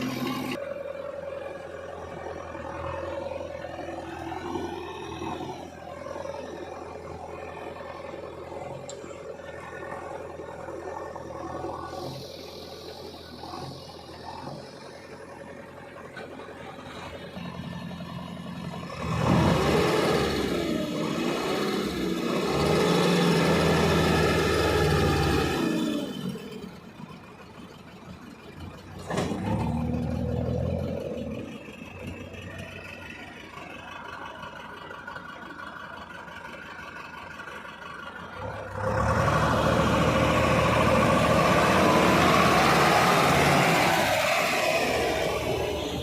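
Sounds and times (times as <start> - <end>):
diesel machinery engine revving: 0.0 - 46.0.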